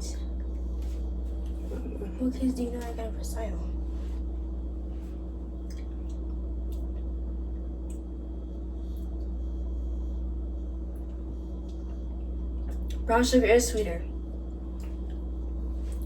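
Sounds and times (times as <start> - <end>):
low electrical hum: 0.0 - 16.0.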